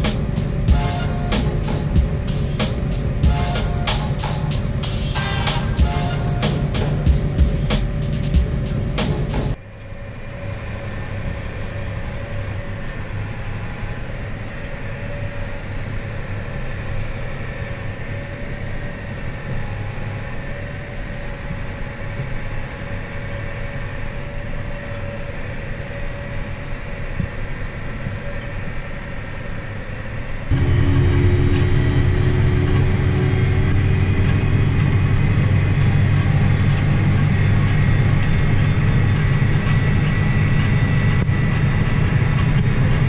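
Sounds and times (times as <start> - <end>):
background music with beat: 0.0 - 9.6
tractor engine droning: 0.0 - 29.8, 30.4 - 43.0.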